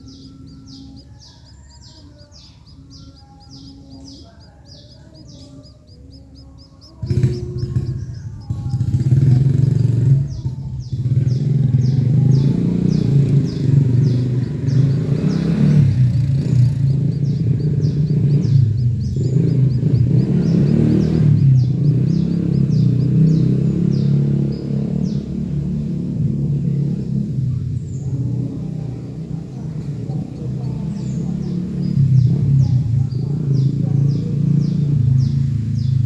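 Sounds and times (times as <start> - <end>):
loud low rumble: 0.0 - 36.0
small birds chirping: 0.0 - 36.0.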